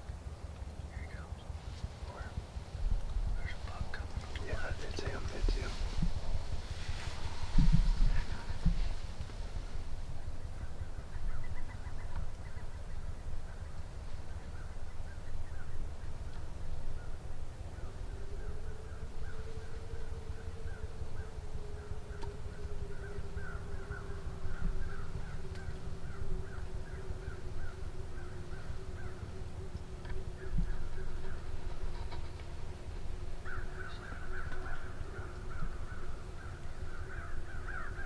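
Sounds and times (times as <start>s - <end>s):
crows cawing: 18.2s - 38.0s.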